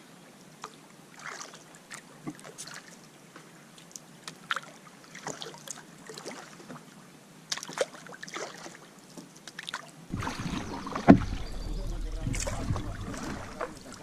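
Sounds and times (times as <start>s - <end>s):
paddle splashing in water: 1.2s - 2.9s, 4.4s - 6.8s, 7.5s - 8.9s, 9.5s - 14.0s.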